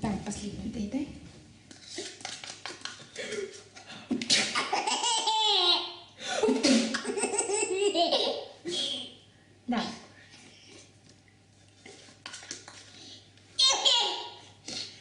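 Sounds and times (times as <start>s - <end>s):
baby laughing hard: 4.4s - 6.0s, 6.9s - 8.5s, 13.6s - 14.4s.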